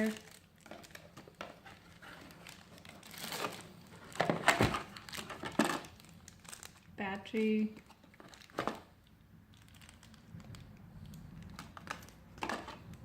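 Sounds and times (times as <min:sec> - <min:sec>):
plastic packaging crinkling: 0:00.0 - 0:13.0.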